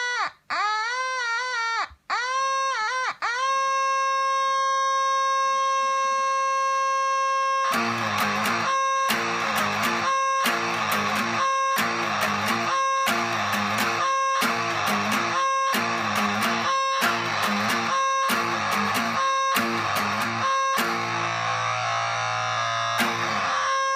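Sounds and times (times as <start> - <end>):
fuzzed electric guitar: 5.4 - 23.9.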